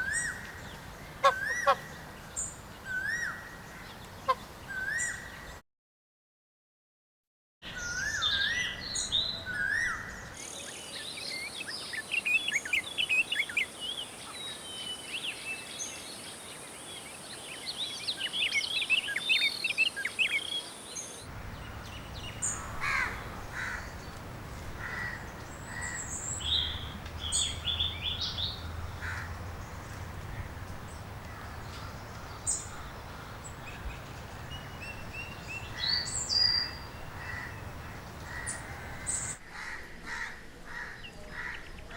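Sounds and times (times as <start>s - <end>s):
birds chirping and calling: 0.0s - 5.5s, 7.7s - 41.9s
steady background hiss: 10.1s - 41.9s.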